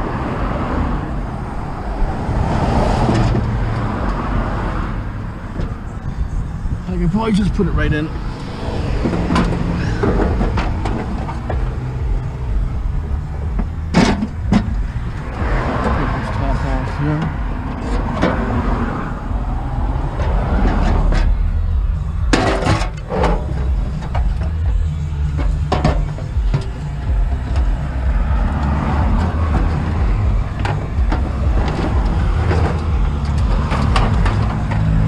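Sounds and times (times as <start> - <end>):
low vehicle rumble: 0.0 - 35.0
metal knocks and clanks: 7.4 - 16.6, 17.2 - 35.0.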